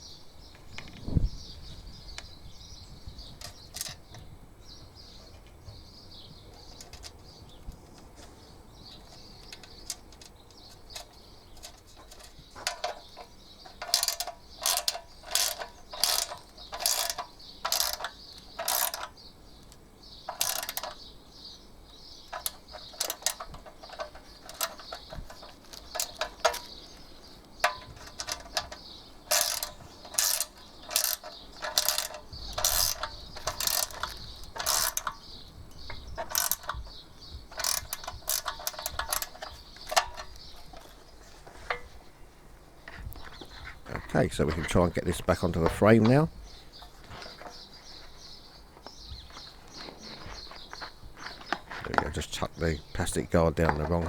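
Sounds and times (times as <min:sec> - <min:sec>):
ratchet wrench clicking: 0:13.7 - 0:19.1, 0:20.3 - 0:21.0, 0:22.3 - 0:26.7, 0:27.6 - 0:35.2, 0:35.8 - 0:40.4.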